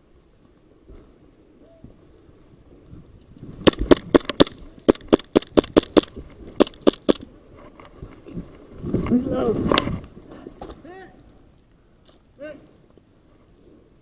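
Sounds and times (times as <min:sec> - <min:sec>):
airsoft gun shots: 0:03.6 - 0:07.2.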